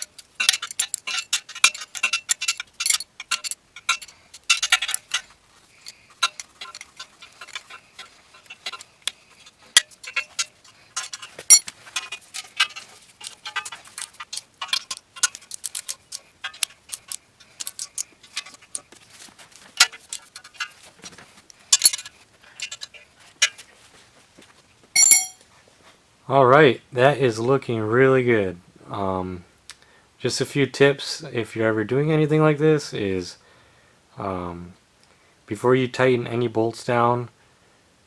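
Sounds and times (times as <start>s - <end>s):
metal clinks: 25.0s - 25.4s.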